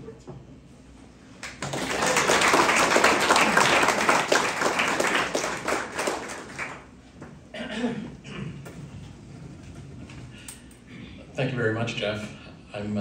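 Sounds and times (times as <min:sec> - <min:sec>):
audience applauding: 0:01.4 - 0:07.0.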